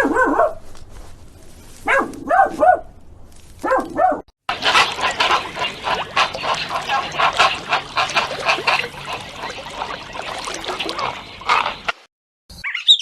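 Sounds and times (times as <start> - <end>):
animal barking in yelps: 0.0 - 0.6, 1.8 - 2.9, 3.6 - 5.3.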